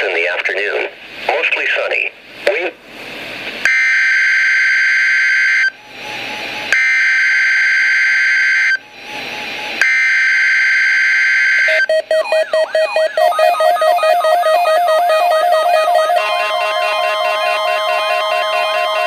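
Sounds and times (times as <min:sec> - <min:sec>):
radio hiss: 0:00.0 - 0:02.8
electronic tune of falling tones: 0:09.9 - 0:19.0.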